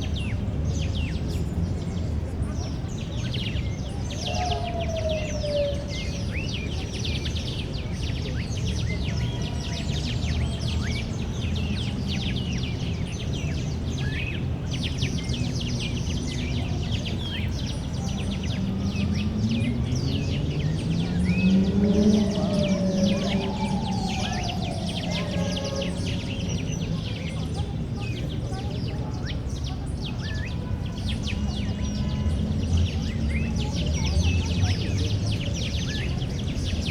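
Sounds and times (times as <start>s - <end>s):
city noise rumble: 0.0s - 36.9s
small birds chirping: 0.0s - 36.9s.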